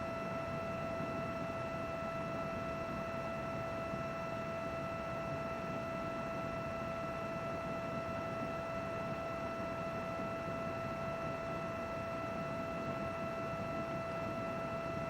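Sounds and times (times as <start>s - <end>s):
computer fan whir: 0.0s - 15.0s.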